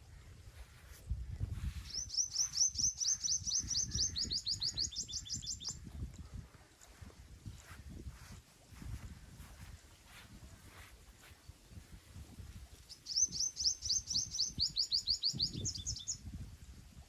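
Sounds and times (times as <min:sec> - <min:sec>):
small bird trilling: 0:01.9 - 0:05.8, 0:12.9 - 0:16.2.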